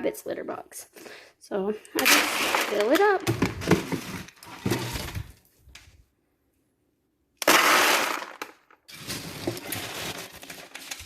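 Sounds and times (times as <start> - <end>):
pellets rattling and clicking: 2.0 - 4.7, 7.4 - 11.0
litter pellets pouring: 7.4 - 11.0.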